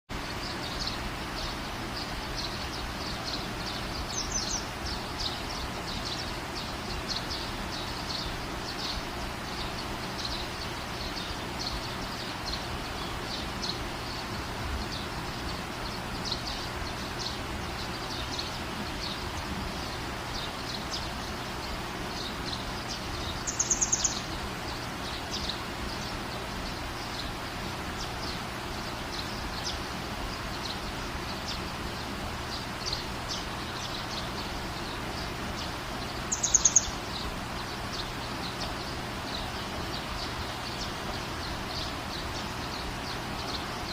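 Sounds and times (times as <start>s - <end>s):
bird chirping: 0.1s - 43.9s
steady rain: 0.1s - 43.9s.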